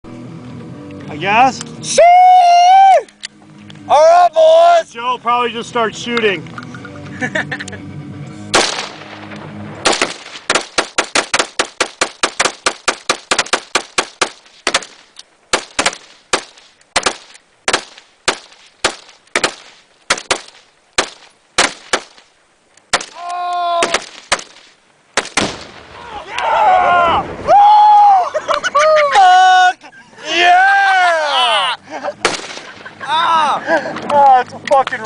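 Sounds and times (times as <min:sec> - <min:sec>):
person shouting: 0:01.9 - 0:03.1, 0:23.1 - 0:24.0, 0:26.0 - 0:31.8, 0:33.0 - 0:33.6
rapid rifle fire: 0:08.5 - 0:22.3, 0:23.8 - 0:25.9, 0:32.2 - 0:33.0.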